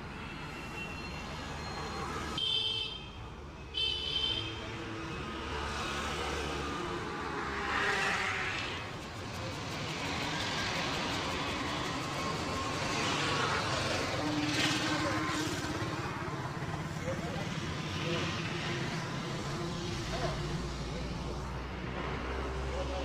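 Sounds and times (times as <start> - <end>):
vehicles passing: 0.0 - 23.0.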